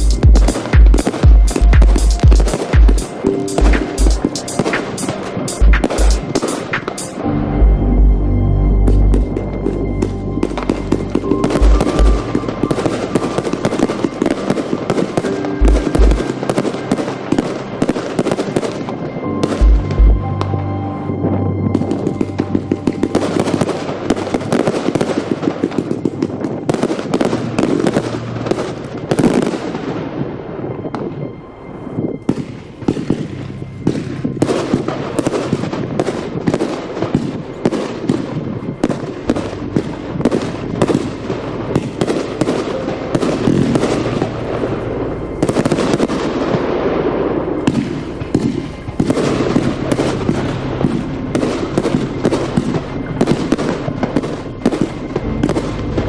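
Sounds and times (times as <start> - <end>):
fireworks bangs and crackling: 23.1 - 30.3, 33.9 - 44.7, 45.4 - 56.0.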